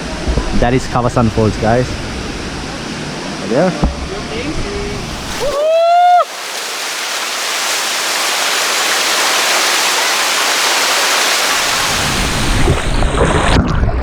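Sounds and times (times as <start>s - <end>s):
waterfall rushing: 4.9s - 13.2s.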